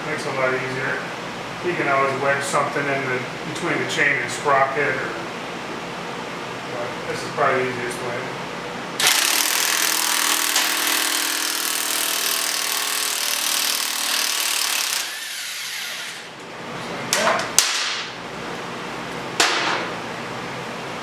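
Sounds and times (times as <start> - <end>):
impact wrench hammering: 9.0 - 15.3.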